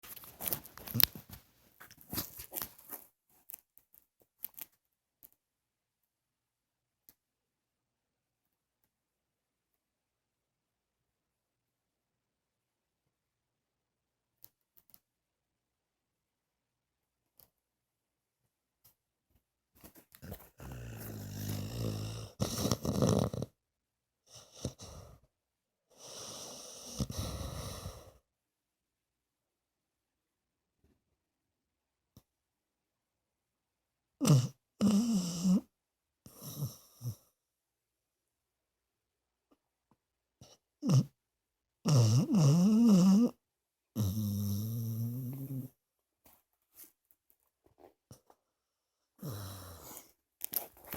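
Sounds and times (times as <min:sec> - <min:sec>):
rustling with sharp clicks: 0:00.0 - 0:05.4
dog snoring: 0:20.2 - 0:23.6, 0:24.3 - 0:25.2, 0:26.0 - 0:28.2, 0:34.2 - 0:35.7, 0:36.3 - 0:37.3, 0:40.4 - 0:41.1, 0:41.8 - 0:43.4, 0:44.0 - 0:45.8, 0:49.2 - 0:50.1.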